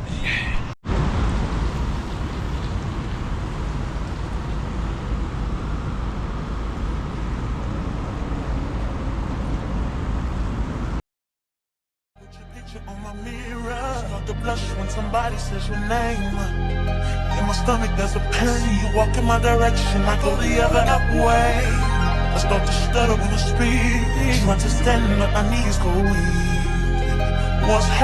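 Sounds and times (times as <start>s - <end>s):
car road noise: 0.9s - 11.0s.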